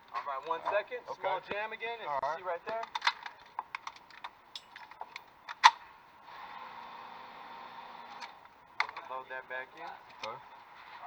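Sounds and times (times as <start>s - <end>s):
faint steady hum: 0.0s - 11.0s
gun mechanism clicks and rattles: 2.8s - 5.8s.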